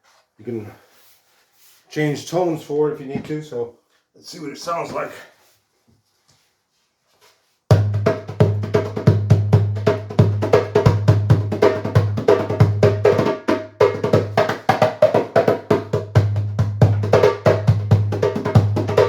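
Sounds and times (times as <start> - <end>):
djembe played by hand: 7.7 - 19.0.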